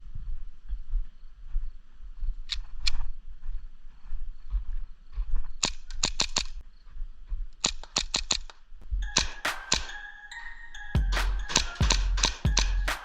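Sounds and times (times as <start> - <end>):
airsoft pistol clicks: 5.6 - 6.6, 7.6 - 8.6.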